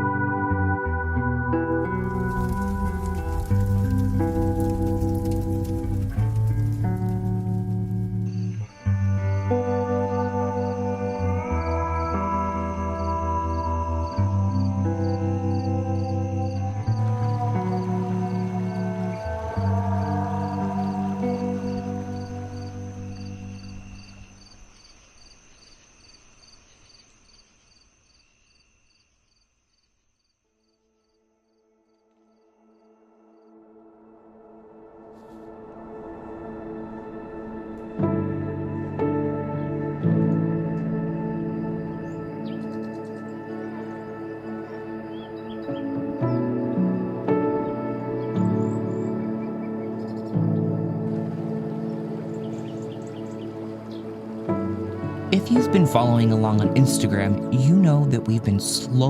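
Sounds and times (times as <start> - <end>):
slow ambient chords: 0.0 - 24.8, 32.8 - 59.0
crickets chirping: 1.8 - 8.7, 12.9 - 33.6, 40.6 - 55.8.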